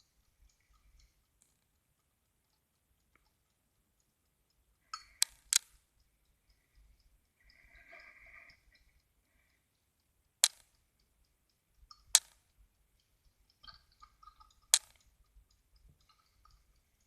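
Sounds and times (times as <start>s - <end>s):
alarm clock mechanical clicks: 0.0s - 17.0s.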